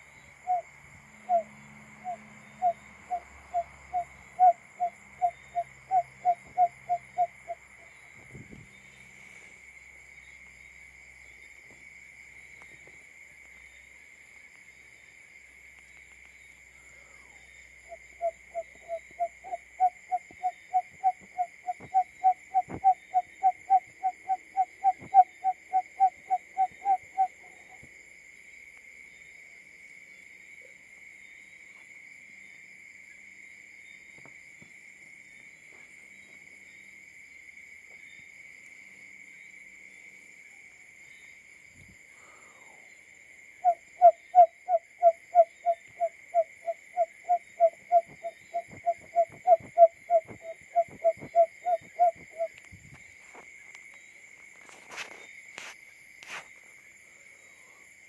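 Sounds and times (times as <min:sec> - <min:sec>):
bird low hooting call: 0:00.0 - 0:00.6, 0:01.2 - 0:07.6, 0:17.9 - 0:27.8, 0:43.6 - 0:52.6.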